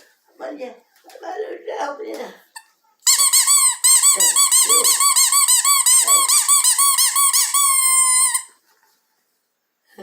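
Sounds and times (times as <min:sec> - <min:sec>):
squeaky rubber toy: 0:02.6 - 0:08.6.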